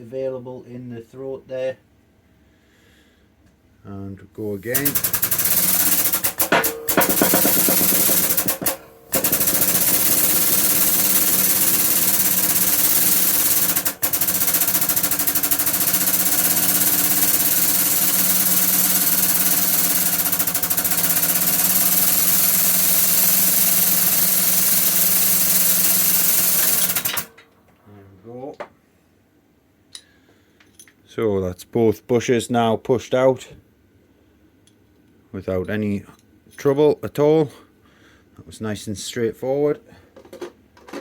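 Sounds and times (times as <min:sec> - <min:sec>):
air-powered press pump running: 0:04.5 - 0:27.4.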